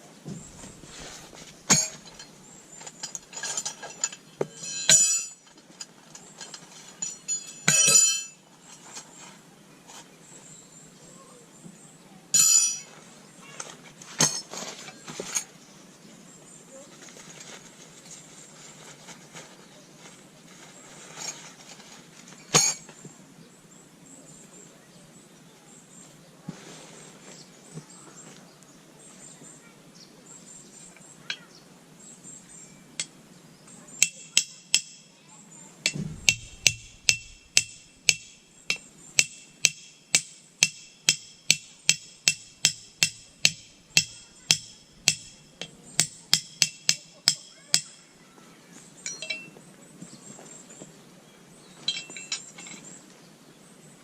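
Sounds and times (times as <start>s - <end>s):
metallic ringing strikes: 35.8s - 41.6s
sharp knock: 35.9s - 38.5s.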